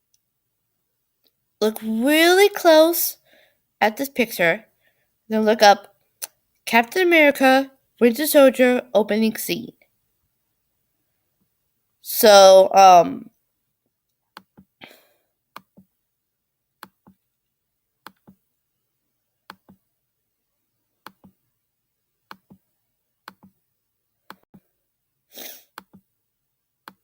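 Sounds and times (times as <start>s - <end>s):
soft breath: 3.2s - 3.6s
computer mouse clicks: 18.0s - 18.4s, 19.5s - 19.8s, 21.0s - 21.4s, 22.3s - 22.6s, 23.3s - 23.6s, 25.7s - 26.0s.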